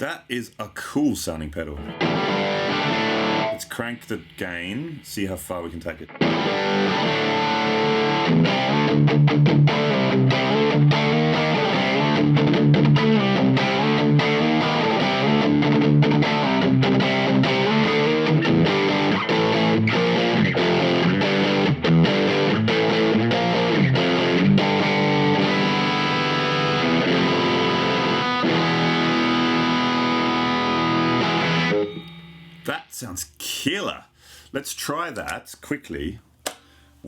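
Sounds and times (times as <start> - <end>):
distorted electric guitar: 1.8 - 32.9.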